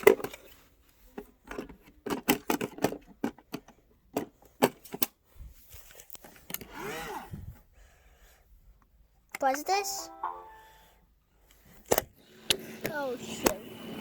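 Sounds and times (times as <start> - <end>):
plastic clicks and knocks: 1.2 - 5.1.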